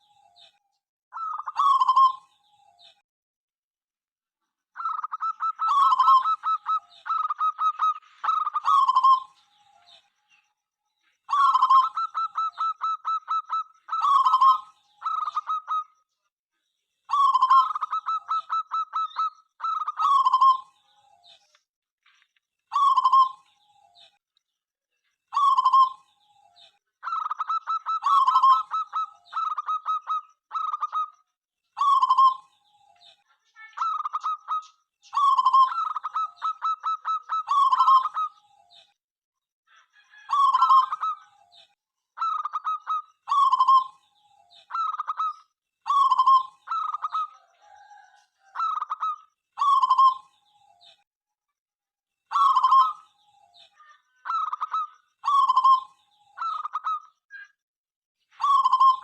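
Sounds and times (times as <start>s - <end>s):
dove cooing: 1.2s - 2.2s, 4.8s - 9.4s, 11.3s - 15.9s, 17.1s - 20.7s, 22.7s - 23.4s, 25.4s - 26.0s, 27.0s - 31.1s, 35.2s - 38.3s, 40.0s - 41.4s, 42.2s - 44.0s, 45.9s - 50.3s, 52.3s - 53.0s, 58.4s - 59.0s.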